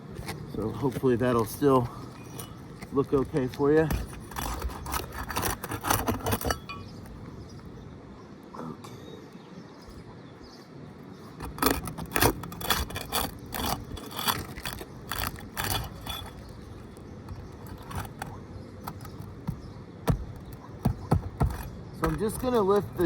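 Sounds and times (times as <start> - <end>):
metal bar scraping roof shingles: 2.4 - 6.9, 11.4 - 19.4.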